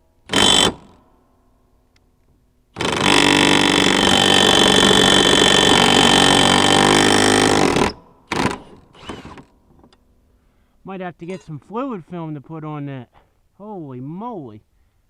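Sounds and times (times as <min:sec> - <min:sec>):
impact wrench running: 0:00.3 - 0:01.0, 0:02.8 - 0:09.5.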